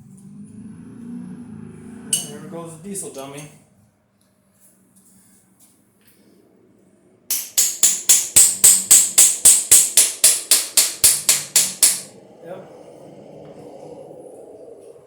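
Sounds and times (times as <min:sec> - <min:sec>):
tool striking metal: 0:02.1 - 0:02.4, 0:07.3 - 0:12.1.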